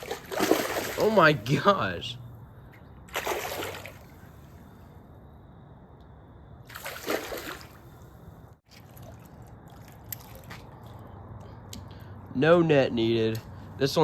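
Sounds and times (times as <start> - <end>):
fish splashing in water: 0.0 - 1.5, 3.1 - 4.2, 6.7 - 8.0, 8.7 - 10.9.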